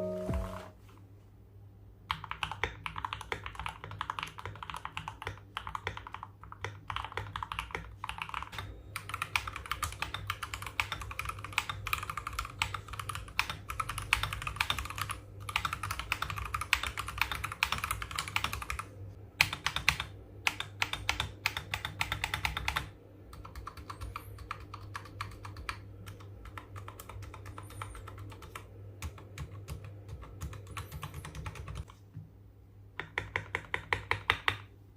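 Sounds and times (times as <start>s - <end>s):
mechanical keyboard typing: 2.1s - 31.9s, 33.0s - 34.7s.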